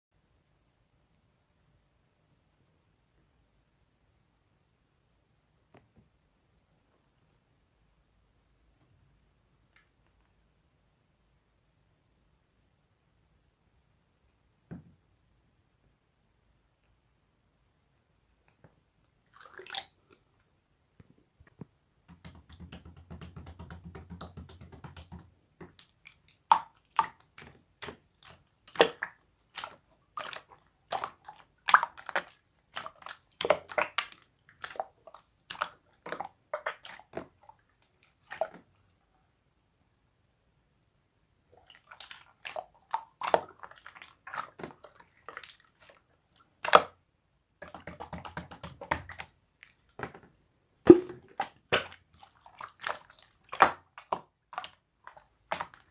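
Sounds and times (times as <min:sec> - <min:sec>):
slime squished by hand: 0:22.1 - 0:38.6, 0:50.9 - 0:55.9.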